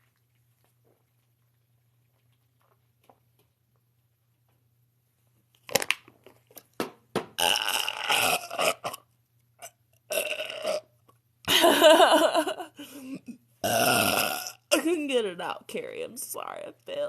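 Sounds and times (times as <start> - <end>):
woman burping: 7.4 - 9.0, 10.1 - 10.8, 11.5 - 15.0.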